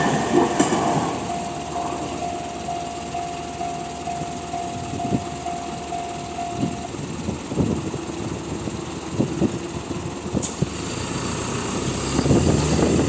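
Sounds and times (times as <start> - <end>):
level-crossing warning bell: 0.0 - 10.3
vehicle engine rumble: 0.0 - 13.0.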